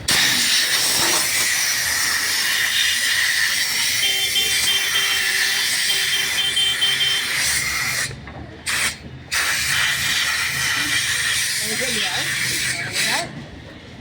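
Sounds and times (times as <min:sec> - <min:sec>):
high-pressure spray hissing: 0:00.1 - 0:13.2.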